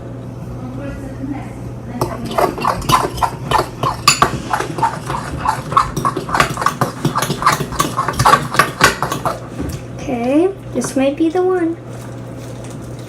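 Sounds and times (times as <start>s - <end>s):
slime squelching: 2.0s - 9.8s.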